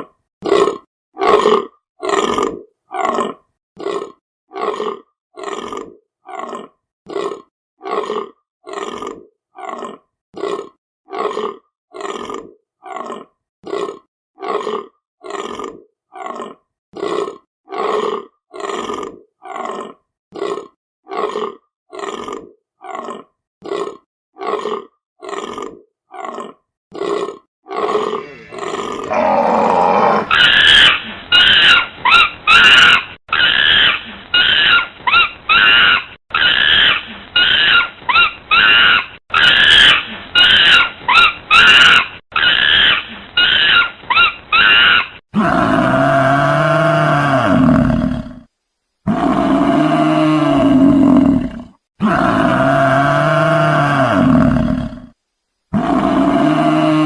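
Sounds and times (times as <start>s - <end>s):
loud continuous animal call: 27.0s - 47.4s
deer grunting: 28.0s - 30.3s.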